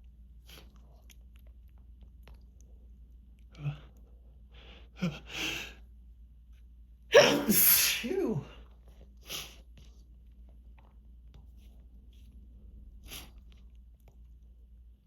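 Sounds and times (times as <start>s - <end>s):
faint clicks and sniffs: 0.0s - 4.9s, 8.7s - 14.5s.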